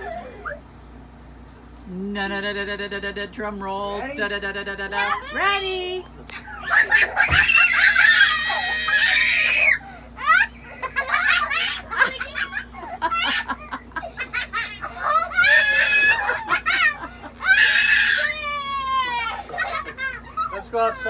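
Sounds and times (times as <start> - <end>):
children shrieking and laughing: 0.0 - 0.6, 6.3 - 21.0.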